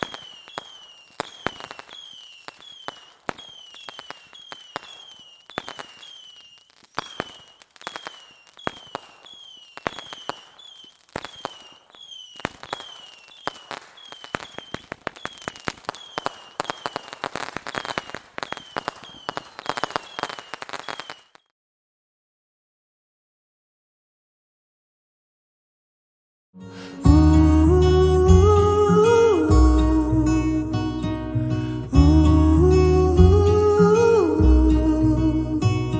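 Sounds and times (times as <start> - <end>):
high falling whistle: 0.0 - 21.3
fireworks crackling pops: 0.0 - 21.5.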